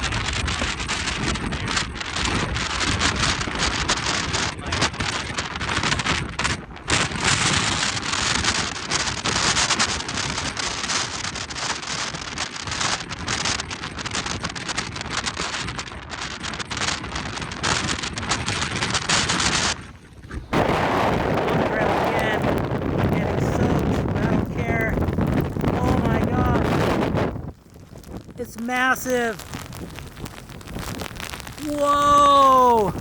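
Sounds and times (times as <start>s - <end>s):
wind buffeting microphone: 0.0s - 33.0s
heavy rain: 20.5s - 33.0s.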